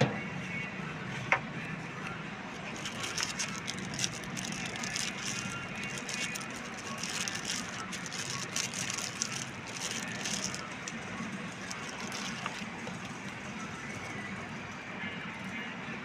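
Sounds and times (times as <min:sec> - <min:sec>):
crackling and rattling: 0:02.6 - 0:13.4.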